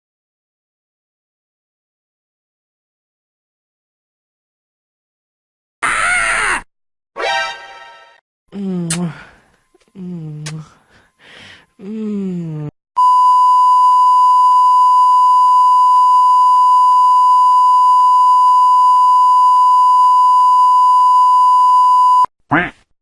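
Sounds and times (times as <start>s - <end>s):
long censor beep: 13.0s - 22.3s.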